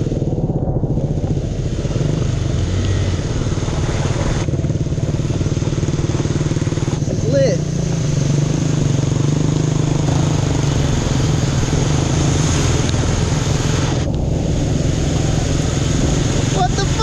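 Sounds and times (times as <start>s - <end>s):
wind noise rushing: 0.0s - 6.8s, 9.8s - 17.0s
dirt bike engine running: 0.0s - 17.0s.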